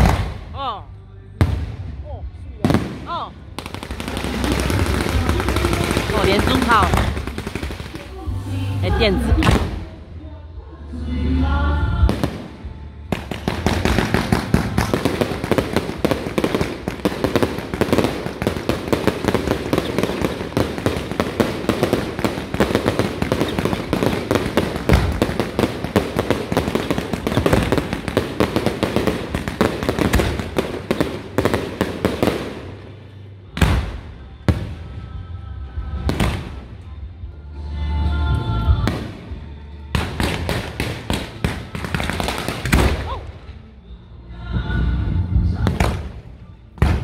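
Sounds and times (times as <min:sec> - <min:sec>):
firecrackers crackling: 0:00.0 - 0:00.6, 0:02.6 - 0:10.0, 0:12.1 - 0:35.1, 0:35.9 - 0:37.0, 0:38.7 - 0:43.6, 0:45.6 - 0:47.0
loud bangs: 0:02.6 - 0:08.4, 0:12.1 - 0:35.0.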